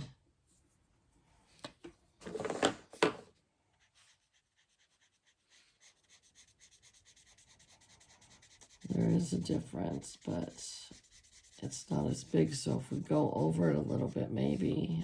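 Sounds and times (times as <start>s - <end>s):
marker rubbing on paper: 3.8s - 15.0s.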